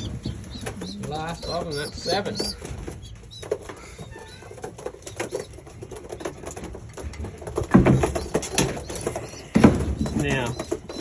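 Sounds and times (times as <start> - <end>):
knocks and thuds: 4.6 - 11.0.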